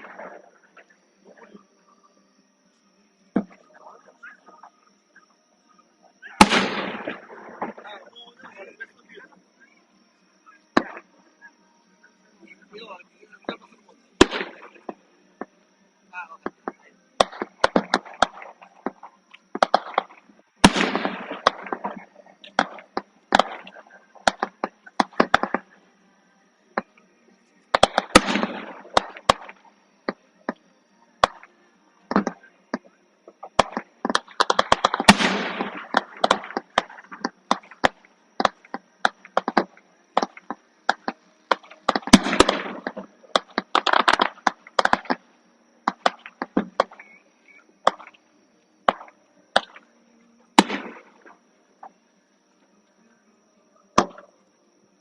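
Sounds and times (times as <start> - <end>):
fireworks bangs and crackling: 6.2 - 8.7, 13.4 - 15.0, 16.4 - 25.7, 27.7 - 30.6, 32.1 - 45.3, 45.9 - 47.2, 47.8 - 48.2, 48.8 - 49.8, 50.6 - 51.4.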